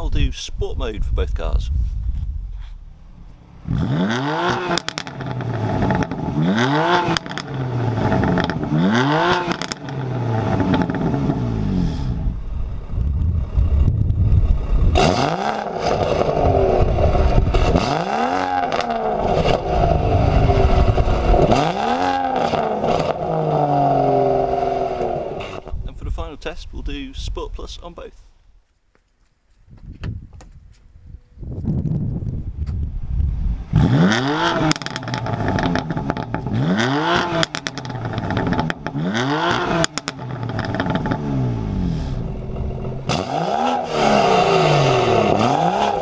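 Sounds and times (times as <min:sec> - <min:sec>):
car engine revving: 0:02.8 - 0:25.7, 0:33.6 - 0:46.0.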